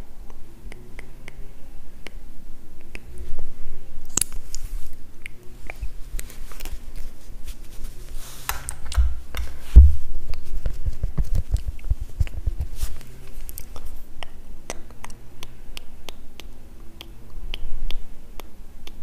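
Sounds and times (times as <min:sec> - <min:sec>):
soft low thumps: 0:08.9 - 0:12.8.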